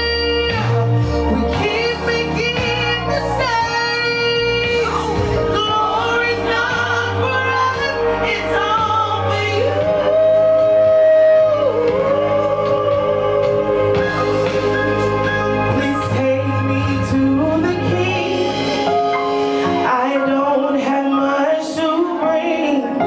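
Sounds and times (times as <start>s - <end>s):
instrumental accompaniment: 0.0s - 23.0s
woman singing: 0.0s - 23.0s.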